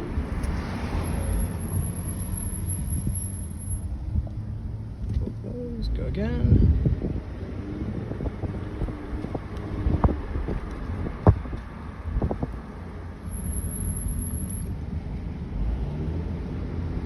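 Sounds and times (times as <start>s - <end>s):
car rolling with road rumble: 0.0s - 17.0s
high-pitched brake squeal: 0.8s - 3.9s, 13.3s - 14.7s.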